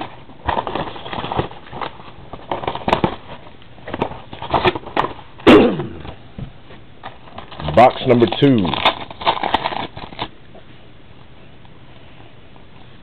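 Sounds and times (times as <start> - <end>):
cards and packaging rustling: 0.0 - 6.2, 7.0 - 10.4.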